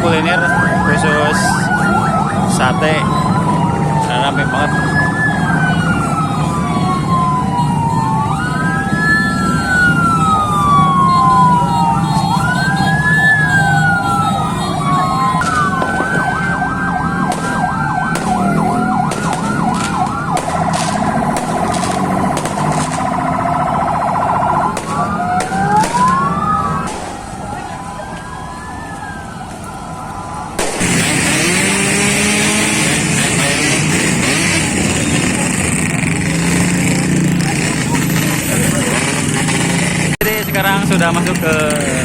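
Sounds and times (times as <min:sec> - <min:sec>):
ambulance sirens: 0:00.0 - 0:42.0
firecrackers going off: 0:09.8 - 0:27.8, 0:30.6 - 0:42.0.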